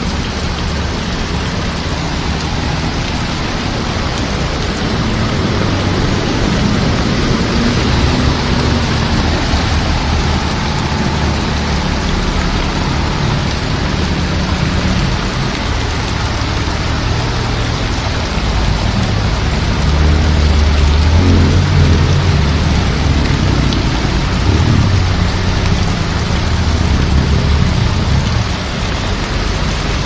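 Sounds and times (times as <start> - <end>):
heavy rain falling: 0.0 - 30.0.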